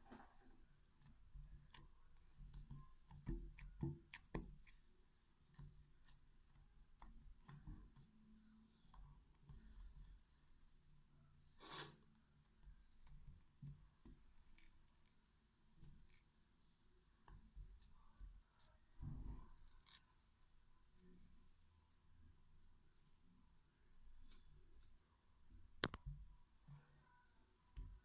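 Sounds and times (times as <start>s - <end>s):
hands kneading sticky dough: 0.0s - 10.8s.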